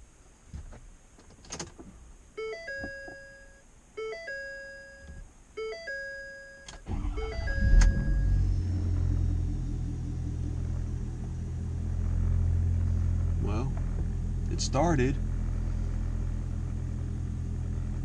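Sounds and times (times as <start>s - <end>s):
dashboard warning chime: 2.4s - 8.4s
diesel engine starting and running: 6.8s - 18.0s.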